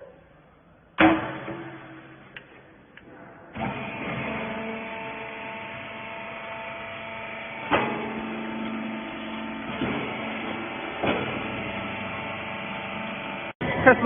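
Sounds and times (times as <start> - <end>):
baler motor hum: 3.5 - 13.8.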